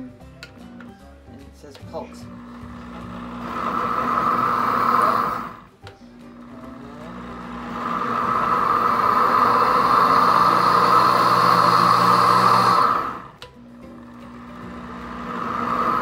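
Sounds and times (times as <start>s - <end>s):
blender motor whining: 2.1s - 16.0s.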